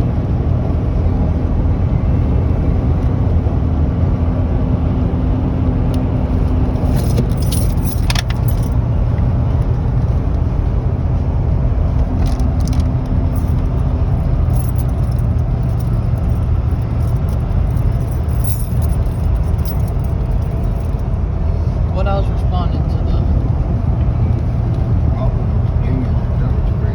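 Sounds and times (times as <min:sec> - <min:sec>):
vehicle cabin road rumble: 0:00.0 - 0:26.9
light jingling rattles: 0:06.6 - 0:08.9, 0:12.2 - 0:21.2.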